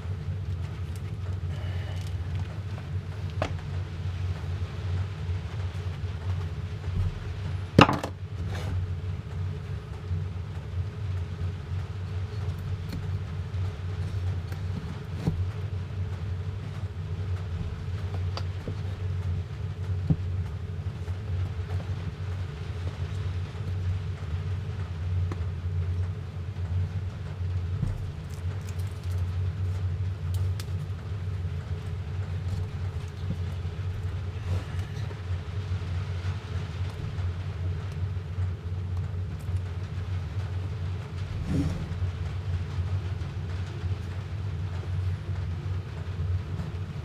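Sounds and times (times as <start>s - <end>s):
steady low hum: 0.0s - 47.0s
wooden frame clicks and knocks: 7.8s - 8.2s.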